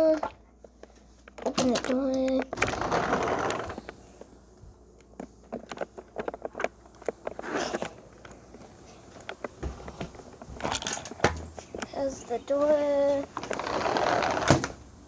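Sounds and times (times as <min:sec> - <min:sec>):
footsteps: 0:02.1 - 0:13.8.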